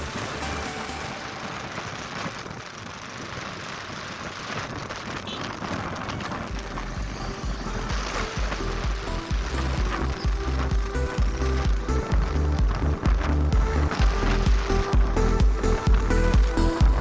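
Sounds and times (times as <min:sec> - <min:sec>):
steady rain falling: 0:00.0 - 0:17.0
low rumble: 0:04.6 - 0:17.0.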